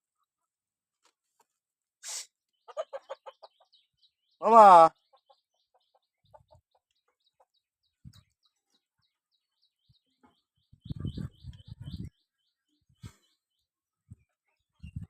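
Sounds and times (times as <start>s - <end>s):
bird chirping rapidly: 9.6s - 13.3s.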